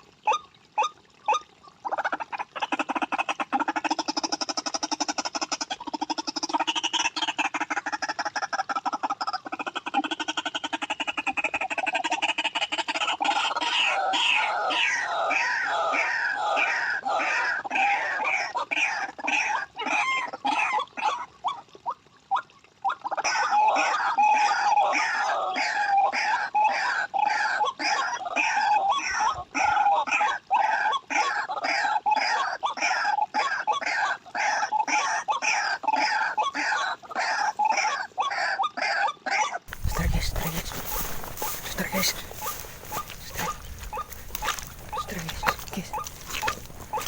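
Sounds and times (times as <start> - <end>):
waterhens croaking calls: 0.0 - 47.0
bird calling harsh notes: 39.7 - 47.0.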